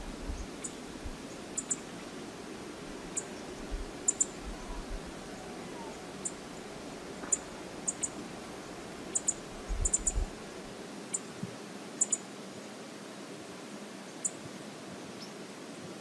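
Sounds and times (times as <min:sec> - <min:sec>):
river water rushing: 0:00.7 - 0:09.7.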